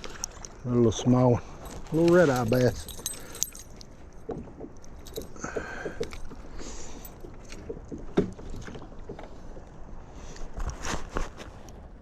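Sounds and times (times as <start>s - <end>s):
gear knocking against a kayak: 1.7s - 9.6s.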